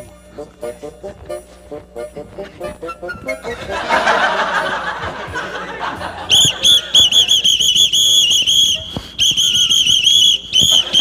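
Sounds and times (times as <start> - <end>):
whistle trilling blasts: 6.3 - 11.0.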